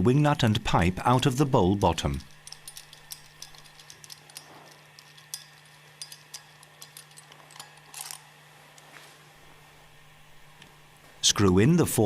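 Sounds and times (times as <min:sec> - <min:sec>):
metal screws clinking: 0:02.0 - 0:08.3
metallic rattle: 0:02.0 - 0:08.3.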